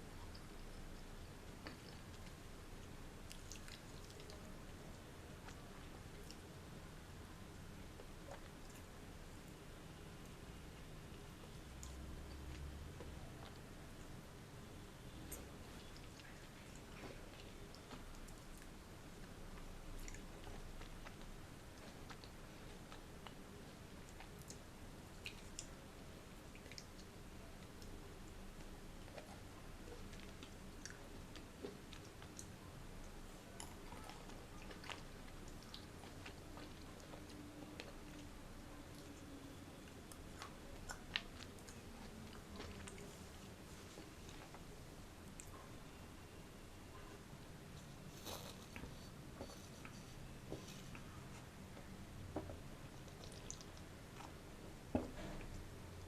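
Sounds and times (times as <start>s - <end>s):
person chewing fruit: 3.2s - 4.8s, 15.0s - 25.8s, 26.6s - 44.7s, 47.7s - 55.6s.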